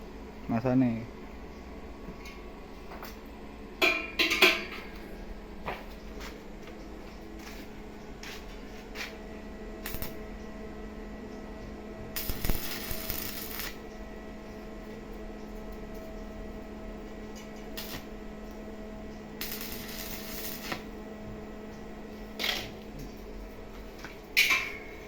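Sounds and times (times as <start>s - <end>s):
steady low hum: 0.0s - 25.0s
welding arc crackling hiss: 9.8s - 10.2s, 12.1s - 13.9s, 16.3s - 18.7s, 19.3s - 21.0s, 22.2s - 23.0s.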